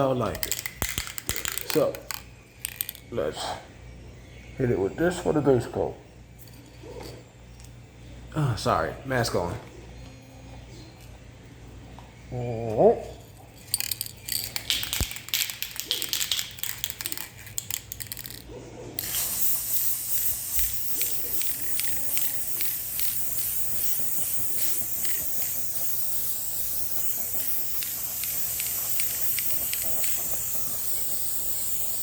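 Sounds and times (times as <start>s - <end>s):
spray can rattling: 0.2s - 3.0s, 13.7s - 32.0s
spray hiss: 19.0s - 32.0s.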